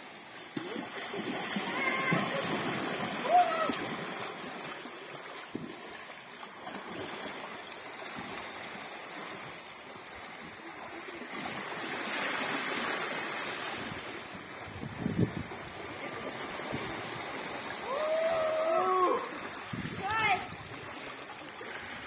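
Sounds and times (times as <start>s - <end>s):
sea waves washing in: 0.4s - 22.0s
wind on microphone: 13.8s - 17.6s, 19.6s - 21.0s.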